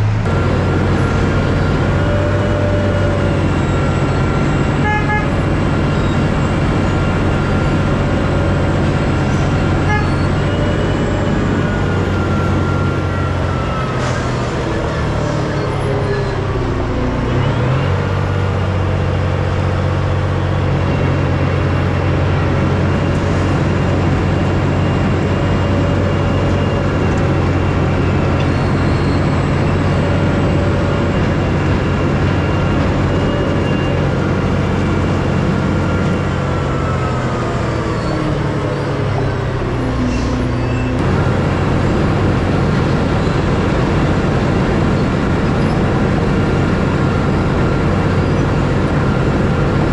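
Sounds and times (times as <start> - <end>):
dump truck diesel engine running: 0.0 - 49.9.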